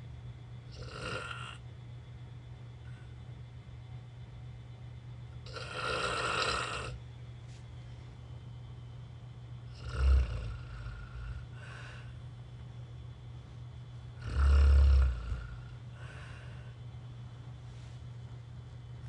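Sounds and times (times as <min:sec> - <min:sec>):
person snoring: 0:00.7 - 0:01.6, 0:05.4 - 0:07.0, 0:09.7 - 0:12.1, 0:14.2 - 0:16.8
soft breath: 0:11.0 - 0:12.2, 0:15.4 - 0:16.8, 0:17.6 - 0:18.2.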